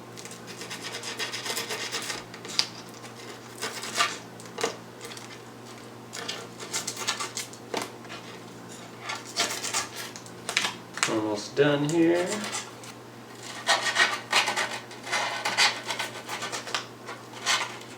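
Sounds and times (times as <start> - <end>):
blade scraping grip tape: 11.9 - 17.9.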